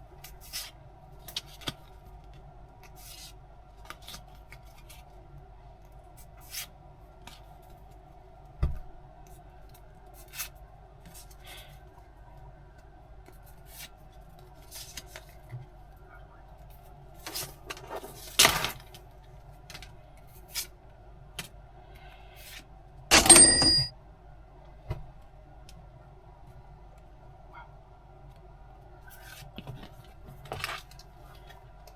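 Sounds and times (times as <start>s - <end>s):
metallic clatter with ring: 23.1s - 23.9s.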